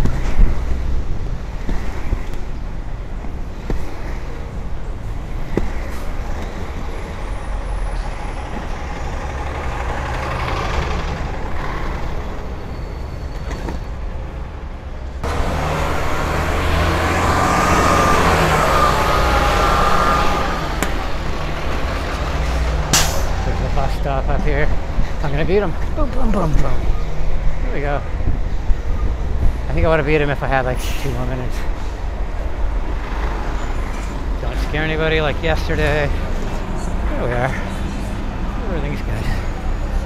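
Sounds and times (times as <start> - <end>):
street traffic: 0.0 - 40.0
heavy vehicle passing with whine: 6.0 - 13.2, 15.2 - 26.0.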